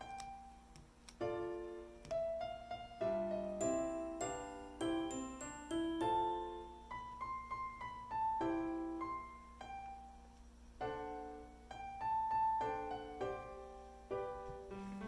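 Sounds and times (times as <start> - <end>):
slow piano music: 0.0 - 15.0.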